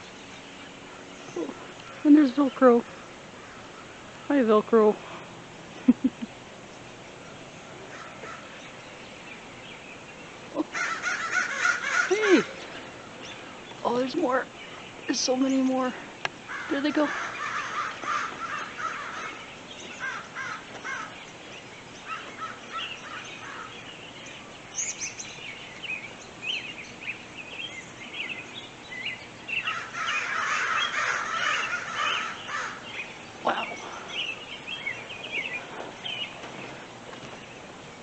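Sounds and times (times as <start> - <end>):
small birds chirping: 0.0 - 38.0
crows cawing: 2.8 - 4.3, 7.6 - 8.6, 10.7 - 12.8, 16.4 - 21.2, 22.0 - 23.9, 29.6 - 34.2.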